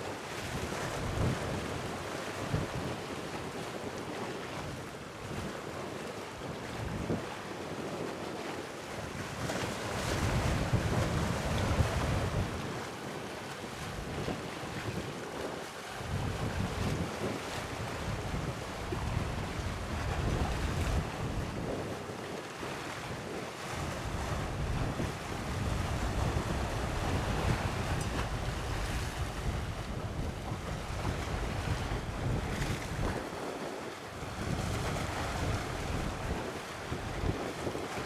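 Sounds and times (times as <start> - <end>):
wind buffeting microphone: 9.4 - 12.9, 13.8 - 38.0
sea waves: 15.7 - 38.0.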